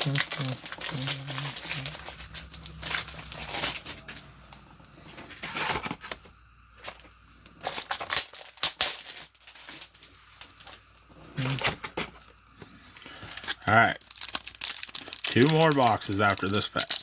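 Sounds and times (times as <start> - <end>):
plastic wrapping crinkling and tearing: 0.0 - 4.6, 6.8 - 11.8, 13.0 - 17.0.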